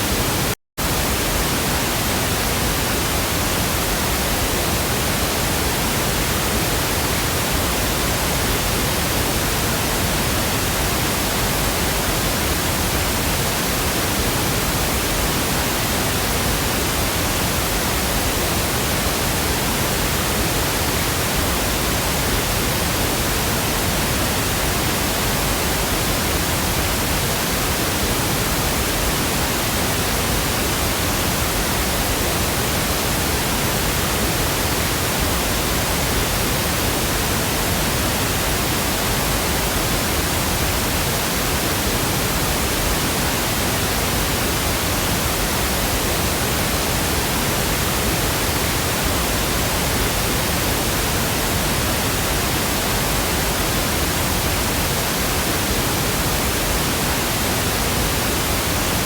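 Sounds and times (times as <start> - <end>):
pink noise hiss: 0.0 - 59.0.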